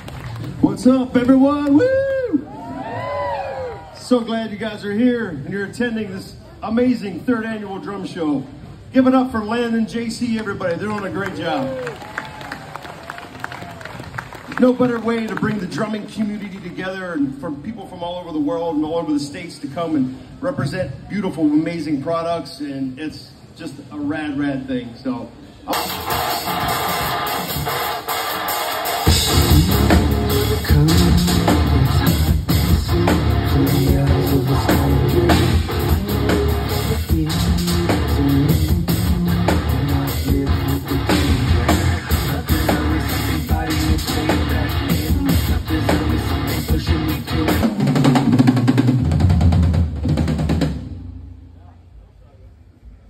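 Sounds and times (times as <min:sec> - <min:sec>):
electric guitar: 0:25.7 - 0:48.8
rock drum kit: 0:25.7 - 0:51.5
heavy bass: 0:25.7 - 0:51.6.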